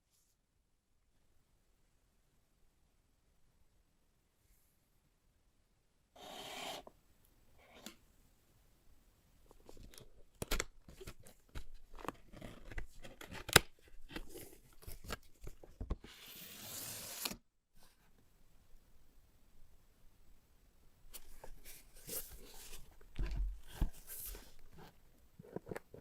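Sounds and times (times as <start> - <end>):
tearing or scraping sound: 16.1 - 17.4
packaging rustling and crinkling: 21.2 - 24.9.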